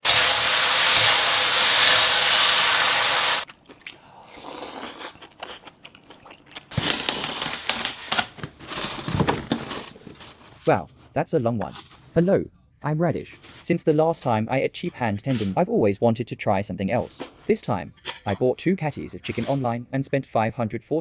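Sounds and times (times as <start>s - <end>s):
loud steady hiss: 0.0s - 3.4s
food being crunched and chewed: 3.4s - 8.0s.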